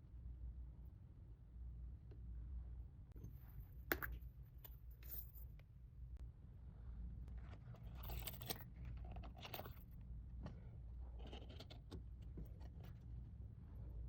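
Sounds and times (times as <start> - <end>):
low steady hum: 0.0 - 14.0
small items rustling and clinking: 7.5 - 9.9.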